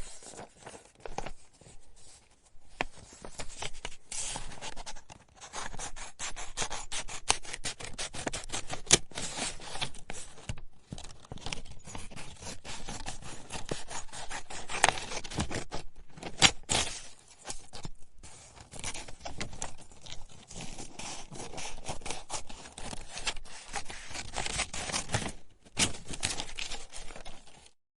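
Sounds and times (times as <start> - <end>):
scissors cutting paper: 5.4 - 10.6, 11.4 - 17.9, 18.6 - 27.7.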